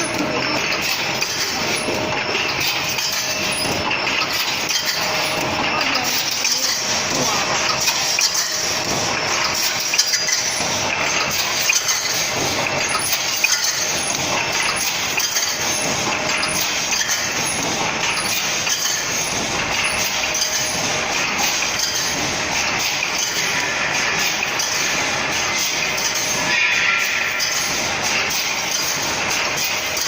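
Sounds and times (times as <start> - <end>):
welding machine clattering: 0.0 - 30.0.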